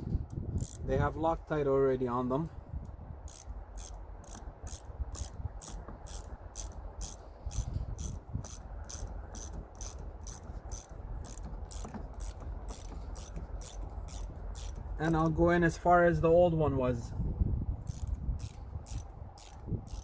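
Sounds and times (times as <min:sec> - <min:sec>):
hand ratchet clicking: 0:00.3 - 0:00.9, 0:03.3 - 0:15.4, 0:17.8 - 0:20.0.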